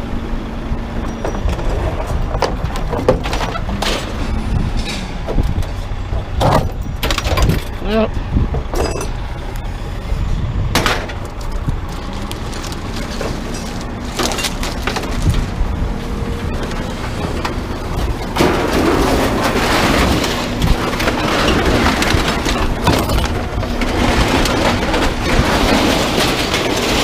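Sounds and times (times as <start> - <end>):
truck engine rumble: 0.0 - 27.0
load rattling and knocking: 1.0 - 7.9, 8.5 - 9.2, 12.6 - 15.6
road and wind noise hiss: 4.1 - 18.2.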